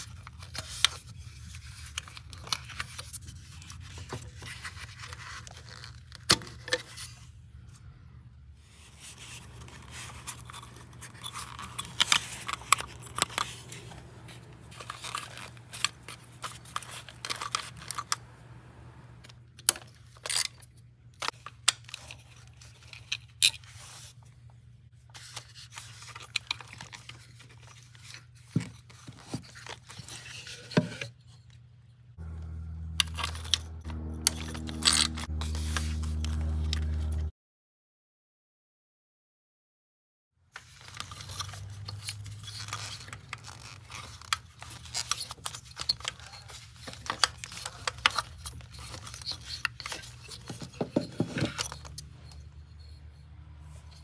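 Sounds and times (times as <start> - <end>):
tools and engine parts handled: 0.0 - 7.9, 8.6 - 18.6, 19.2 - 37.2, 40.6 - 54.0
steady low hum: 7.2 - 19.9.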